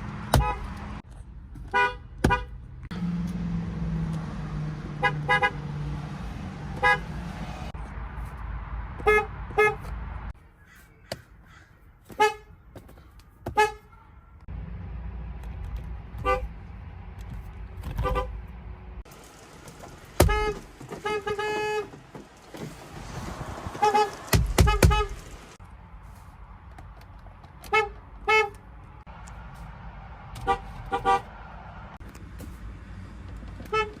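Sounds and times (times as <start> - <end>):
car horn beeps: 0.3 - 0.8, 1.7 - 2.6, 5.0 - 5.8, 6.7 - 7.2, 9.0 - 9.9, 12.1 - 12.6, 13.5 - 14.0, 16.2 - 16.5, 17.9 - 18.4, 20.2 - 22.0, 23.8 - 25.3, 27.6 - 28.6, 30.4 - 31.3, 33.6 - 34.0.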